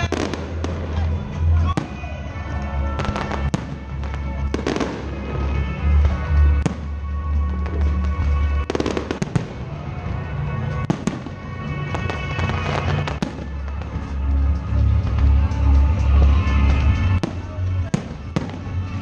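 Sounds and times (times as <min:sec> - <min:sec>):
loud music with heavy bass: 0:00.0 - 0:19.0
fireworks bursting in bangs: 0:03.0 - 0:07.0, 0:07.6 - 0:09.7, 0:10.8 - 0:14.1, 0:16.2 - 0:19.0.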